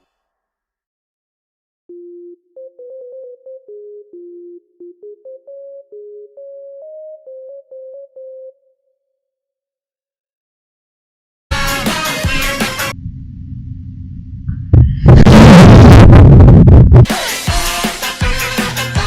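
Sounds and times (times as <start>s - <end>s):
electronic keyboard tune: 1.9s - 9.3s.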